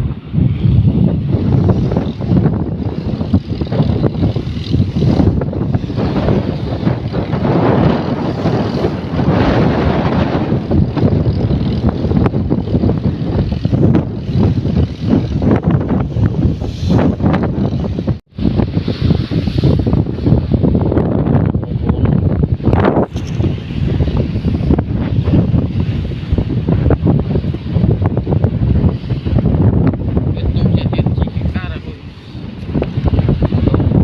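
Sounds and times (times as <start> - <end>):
wind buffeting microphone: 0.0 - 34.0.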